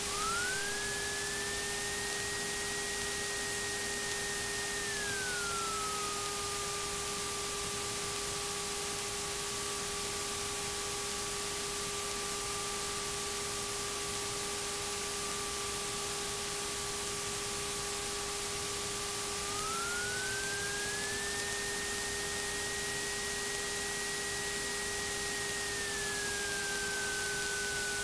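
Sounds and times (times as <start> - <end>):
electrical whine: 0.0 - 9.1, 16.6 - 28.0.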